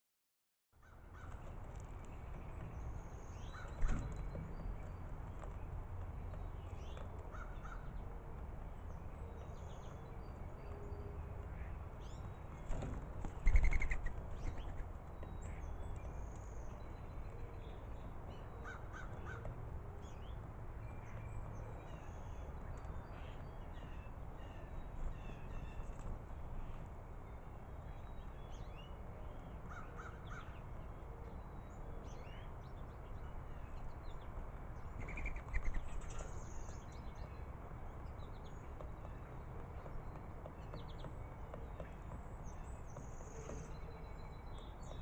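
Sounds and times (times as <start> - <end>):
starlings and doves calling: 13.3 - 14.8.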